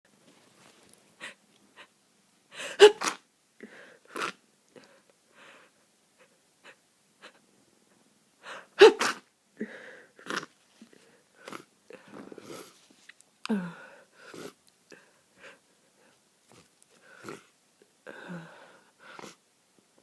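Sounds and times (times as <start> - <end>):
person sneezing: 2.6 - 3.2, 8.7 - 9.3
sniffs and breaths: 9.6 - 13.1, 13.7 - 17.5, 18.1 - 19.4.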